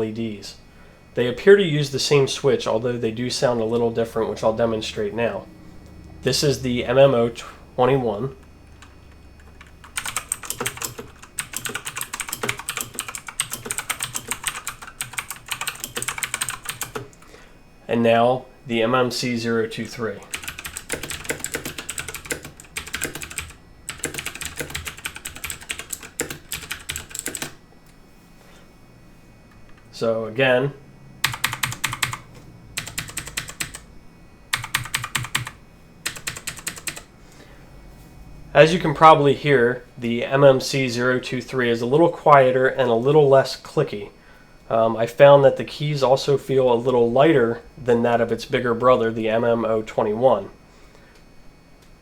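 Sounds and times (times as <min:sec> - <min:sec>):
mechanical keyboard typing: 0:08.7 - 0:17.2, 0:20.3 - 0:27.6, 0:31.2 - 0:32.2, 0:32.8 - 0:33.8, 0:34.5 - 0:37.1.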